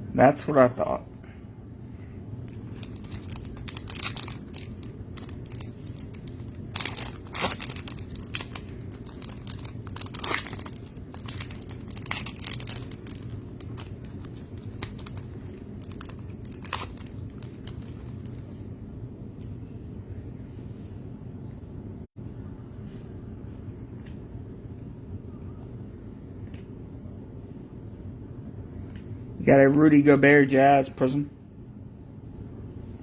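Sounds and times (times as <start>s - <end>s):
steady low hum: 0.0s - 33.0s
plastic wrappers tearing and crinkling: 2.5s - 18.4s.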